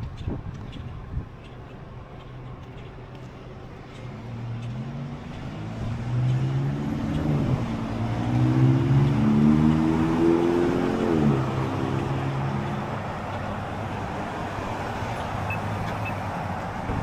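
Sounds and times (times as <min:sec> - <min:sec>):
vehicle engine accelerating: 0:04.1 - 0:17.0.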